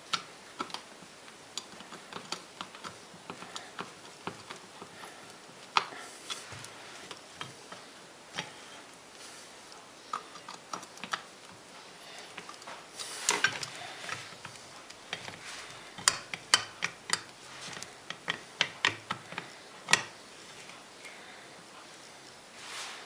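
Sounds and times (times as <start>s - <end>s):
hard parts clicking and knocking: 0.0s - 5.0s, 13.3s - 20.8s
short rustle: 21.9s - 23.0s.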